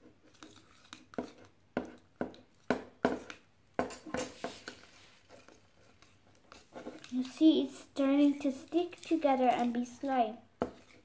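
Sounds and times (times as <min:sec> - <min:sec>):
spoon scraping a plate: 0:03.9 - 0:07.2, 0:10.6 - 0:11.0.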